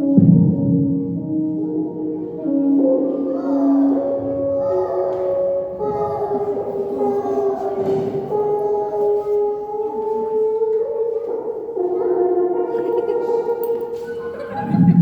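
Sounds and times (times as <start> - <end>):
slow background music: 0.0 - 15.0.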